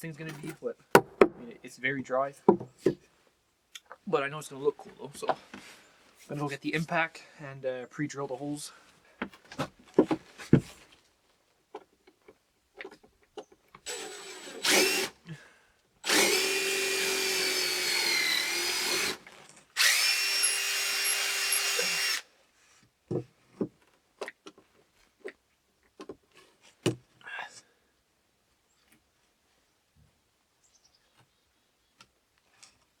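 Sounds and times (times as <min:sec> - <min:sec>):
handling clicks and knocks: 0:00.2 - 0:01.5, 0:02.5 - 0:03.0
impact driver drilling wood: 0:13.8 - 0:15.2, 0:16.0 - 0:22.2.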